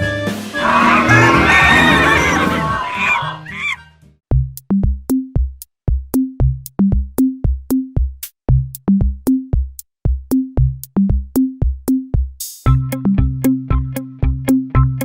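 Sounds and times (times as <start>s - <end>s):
electronic drum beat: 4.3s - 13.3s.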